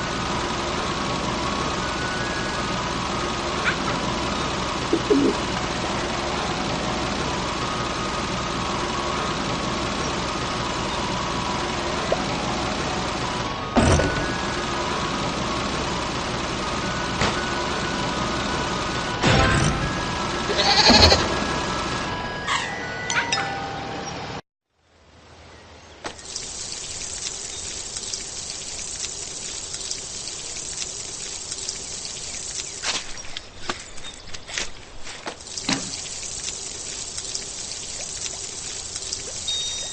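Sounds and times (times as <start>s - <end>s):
rain hiss: 0.0s - 13.7s, 26.1s - 34.1s, 35.2s - 39.9s
engine idling: 0.0s - 19.3s
raindrop ticks: 26.2s - 34.4s, 35.3s - 39.9s.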